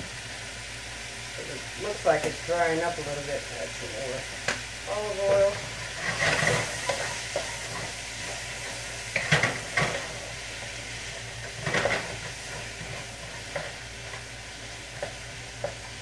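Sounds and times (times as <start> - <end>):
food sizzling in a wok: 0.0 - 16.0
spatula scraping the pan: 5.8 - 10.1.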